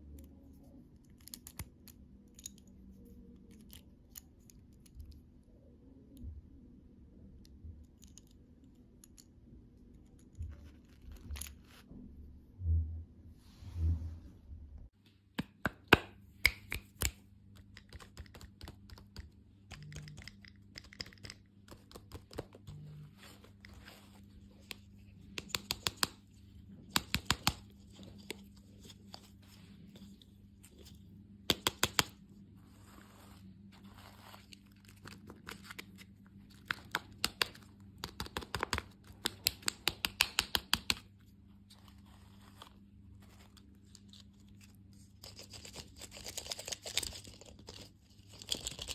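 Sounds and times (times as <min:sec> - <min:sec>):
faint low hum: 0:00.0 - 0:15.4, 0:16.1 - 0:39.4.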